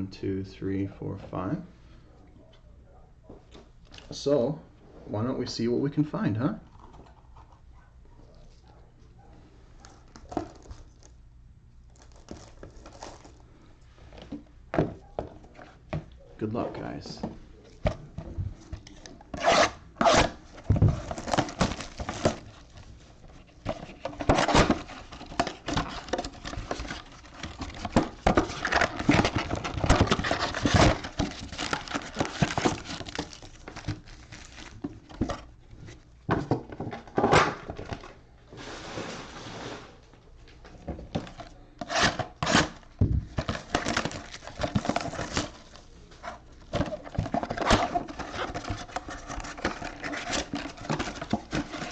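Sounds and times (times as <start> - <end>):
shrink wrap tearing and crinkling: 9.8 - 11.2, 11.8 - 13.5, 18.8 - 36.0, 41.8 - 51.9.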